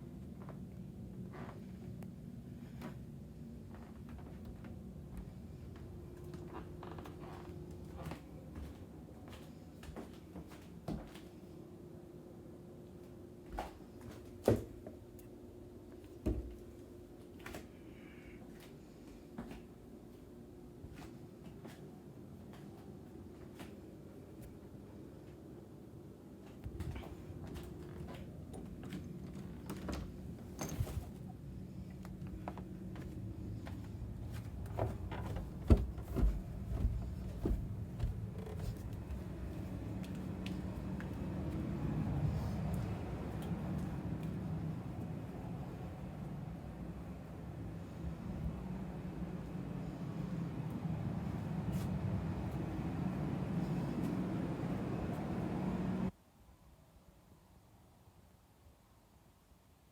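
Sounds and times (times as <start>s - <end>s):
low room hum: 0.0s - 59.9s
light knocks and thumps: 34.3s - 39.2s.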